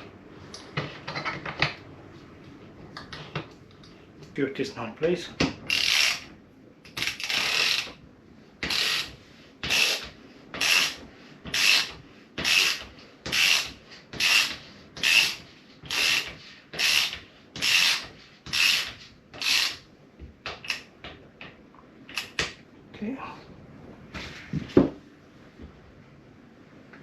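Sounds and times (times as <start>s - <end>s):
ratchet wrench clicking: 13.4s - 19.8s.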